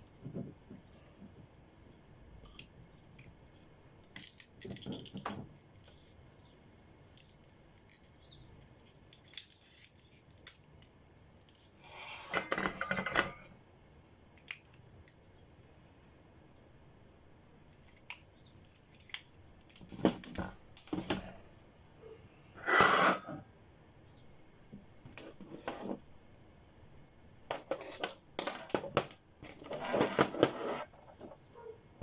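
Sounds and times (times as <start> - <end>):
small tools clicking and clinking: 4.0 - 6.0, 7.1 - 11.6.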